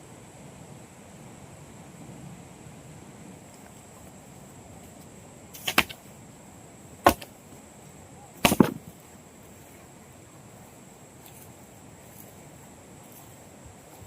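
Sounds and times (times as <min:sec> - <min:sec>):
sharp strikes: 0:07.1 - 0:07.3, 0:08.4 - 0:08.8.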